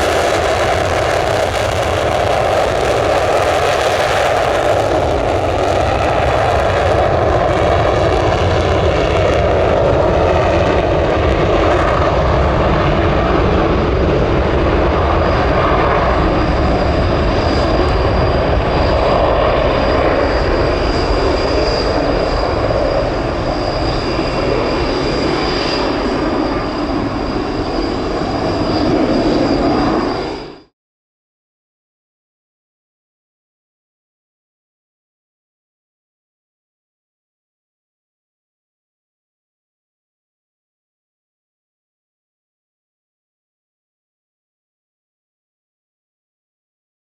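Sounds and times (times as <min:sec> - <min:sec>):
jet engine roar with whine: 0:00.0 - 0:30.8.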